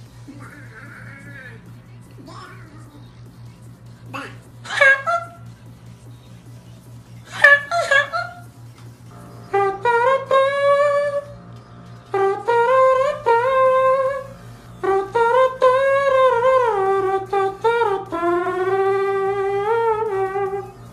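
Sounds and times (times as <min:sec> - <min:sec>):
man humming high melody: 0:09.2 - 0:11.4, 0:12.1 - 0:20.9.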